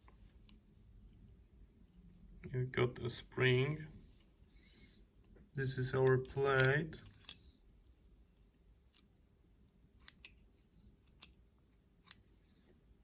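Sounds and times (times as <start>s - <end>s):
faint clicks of small metal parts: 5.1s - 8.1s, 8.9s - 9.2s, 10.0s - 12.6s.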